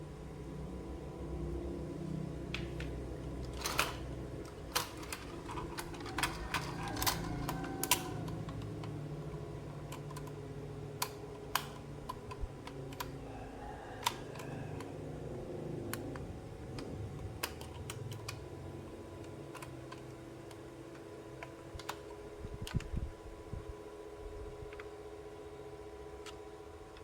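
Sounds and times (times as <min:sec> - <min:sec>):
steady low hum: 0:00.0 - 0:27.0
plastic toy pieces clicking: 0:04.7 - 0:08.6.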